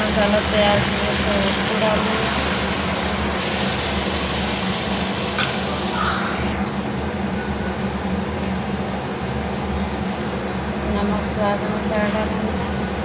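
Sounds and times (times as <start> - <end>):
curry sizzling in a pan: 0.0 - 6.6.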